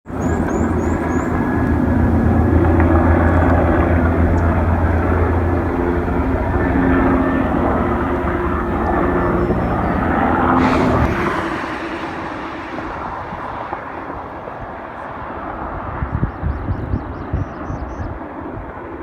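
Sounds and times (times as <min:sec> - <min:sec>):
propeller aircraft engine droning: 0:00.0 - 0:19.0
low rushing noise: 0:00.1 - 0:16.1
low thumps: 0:00.2 - 0:14.3.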